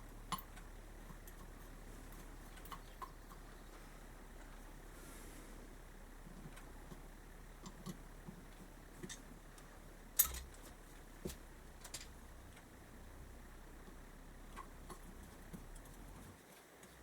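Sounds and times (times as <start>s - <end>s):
small metal parts clicking: 10.2s - 10.7s, 11.7s - 12.7s.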